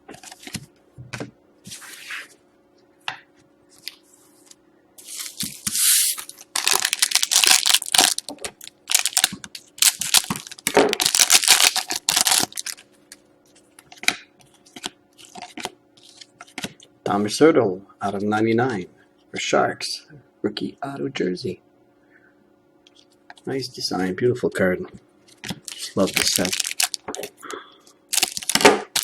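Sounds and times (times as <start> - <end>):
wrapper tearing and crinkling: 5.0 - 12.8, 25.6 - 27.3, 28.1 - 29.0.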